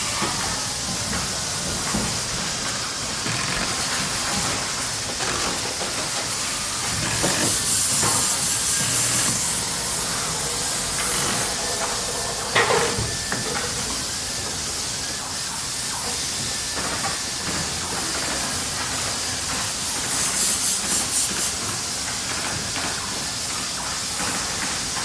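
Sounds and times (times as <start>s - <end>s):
machinery hiss: 0.0s - 25.0s
high hissing pulses: 7.2s - 14.4s.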